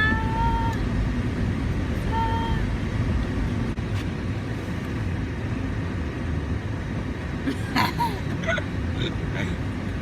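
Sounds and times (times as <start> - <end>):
car engine rumble: 0.0 - 10.0
road noise: 0.0 - 10.0.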